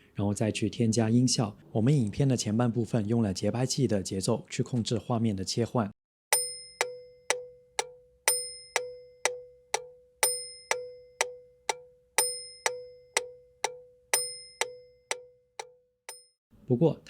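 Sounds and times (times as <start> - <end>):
accented ringing metronome click: 6.3 - 16.3
metronome clicking: 6.4 - 16.3.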